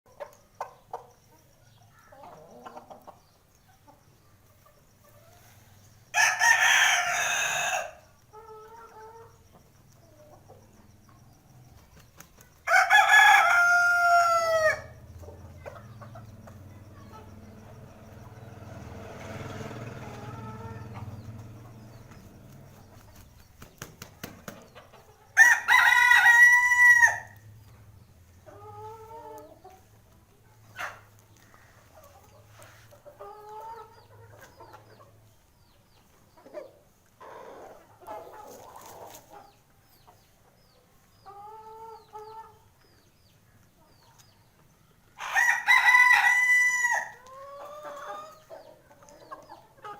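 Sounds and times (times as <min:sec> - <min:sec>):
rooster crowing: 0:06.1 - 0:08.0, 0:12.7 - 0:15.0, 0:25.4 - 0:27.4, 0:45.2 - 0:47.2.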